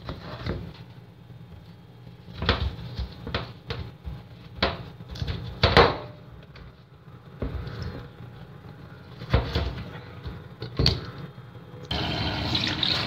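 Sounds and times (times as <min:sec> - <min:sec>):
kitchen knocks and clatters: 0:02.3 - 0:06.2, 0:09.2 - 0:11.1.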